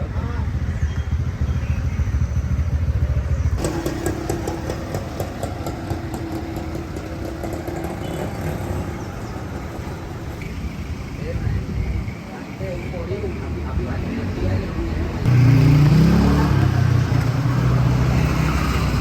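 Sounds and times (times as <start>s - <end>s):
motorbike engine rumbling: 0.0s - 19.0s.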